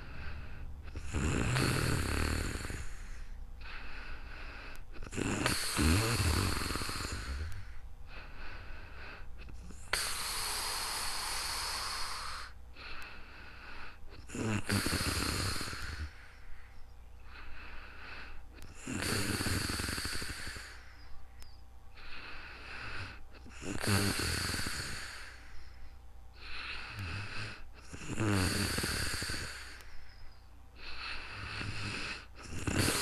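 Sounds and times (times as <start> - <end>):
person snoring: 0.0 - 16.4, 17.3 - 20.9, 22.0 - 25.8, 26.4 - 30.0, 30.8 - 33.0
long breathy hiss: 0.0 - 33.0.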